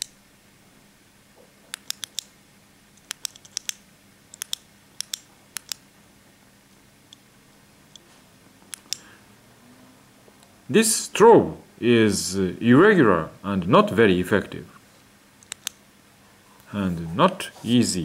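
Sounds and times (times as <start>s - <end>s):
flashlight switch clicking: 1.7s - 2.3s, 3.0s - 5.8s, 8.7s - 9.1s, 15.4s - 15.8s.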